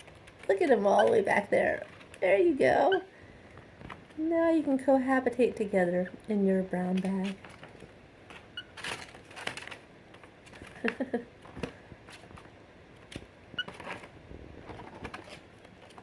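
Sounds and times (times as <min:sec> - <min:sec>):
paper bag crinkling: 0:06.9 - 0:16.0.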